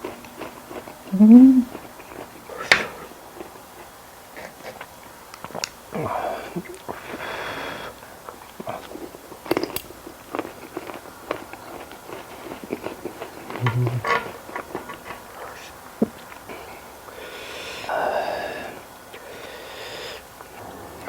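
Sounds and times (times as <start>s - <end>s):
person chewing and crunching: 0.0s - 7.4s, 8.0s - 17.2s.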